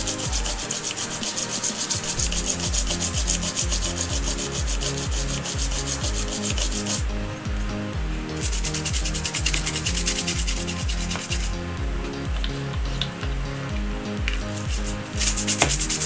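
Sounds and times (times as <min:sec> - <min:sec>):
rapid hi-hat ticks: 0:00.0 - 0:07.1, 0:08.4 - 0:11.6, 0:14.3 - 0:16.0
pulsing bass line: 0:00.0 - 0:16.0.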